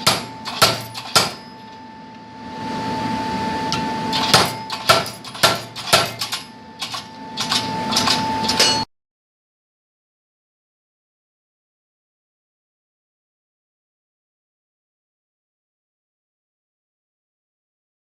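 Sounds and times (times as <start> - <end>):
hammer striking steel: 0.0 - 1.7, 3.7 - 8.9.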